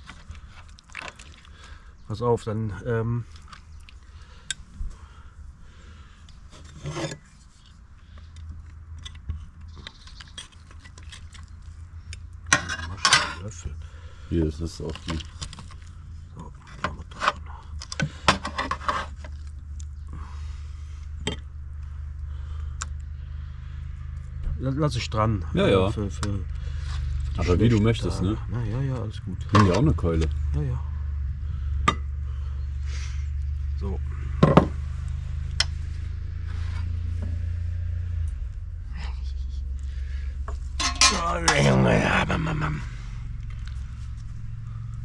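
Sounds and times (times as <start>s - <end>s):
low steady rumble: 0.0s - 45.0s
spoon scraping and knocking on pot: 40.8s - 41.6s
utensils clinking on dishes: 40.8s - 41.7s.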